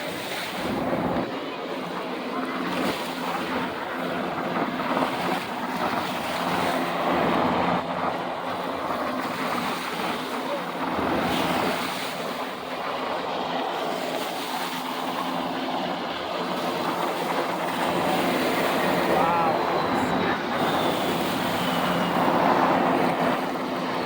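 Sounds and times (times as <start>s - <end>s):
wind noise on microphone: 0.0s - 1.5s
helicopters droning: 0.0s - 24.0s
surf: 0.0s - 24.0s.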